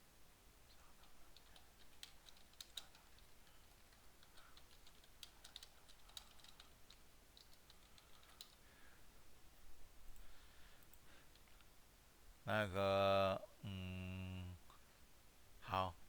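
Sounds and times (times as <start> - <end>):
faint keyboard typing: 0.6 - 8.9.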